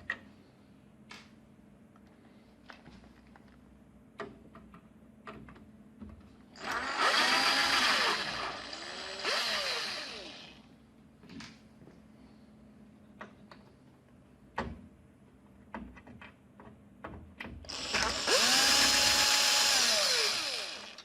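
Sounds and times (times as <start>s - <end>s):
electric screwdriver running: 6.6s - 10.5s, 17.7s - 21.0s.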